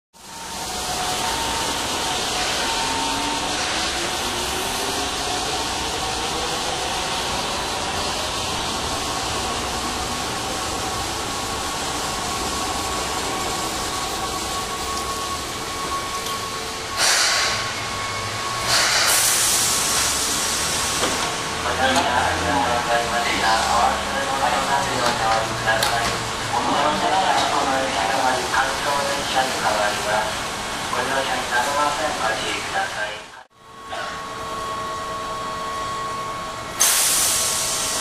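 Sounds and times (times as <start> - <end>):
train rumble and hiss: 0.2 - 38.0
air hiss bursts: 17.0 - 17.7, 18.6 - 21.0, 36.8 - 38.0.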